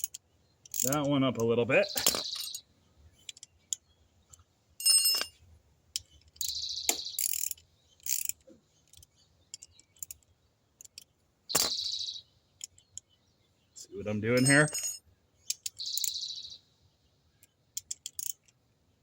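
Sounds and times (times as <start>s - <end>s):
ringing metallic clink: 4.8s - 5.4s, 11.6s - 11.9s, 14.4s - 15.0s.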